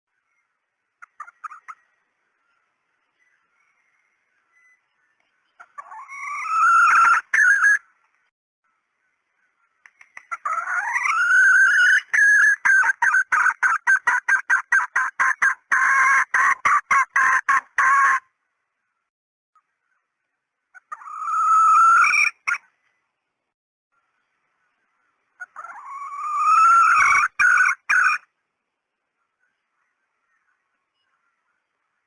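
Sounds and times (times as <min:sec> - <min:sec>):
hen calls and clucks: 0:01.0 - 0:02.6, 0:05.4 - 0:08.2, 0:09.4 - 0:18.4, 0:20.7 - 0:22.9, 0:25.0 - 0:28.4.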